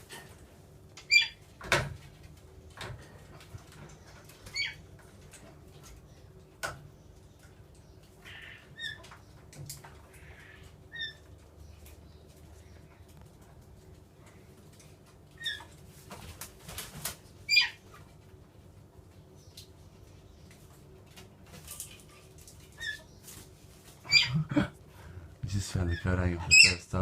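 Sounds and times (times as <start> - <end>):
parrots chirping: 1.1 - 1.4, 10.1 - 11.3, 17.5 - 17.8, 24.0 - 24.5, 25.8 - 26.9.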